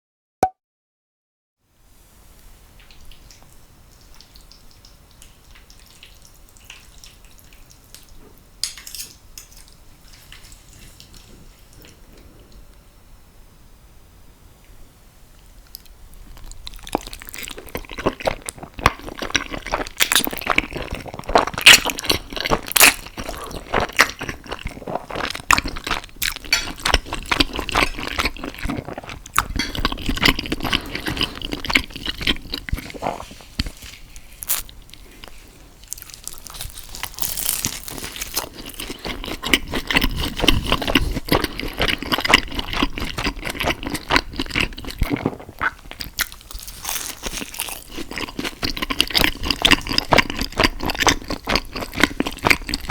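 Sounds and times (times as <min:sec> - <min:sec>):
person chewing food: 0:15.7 - 0:52.9.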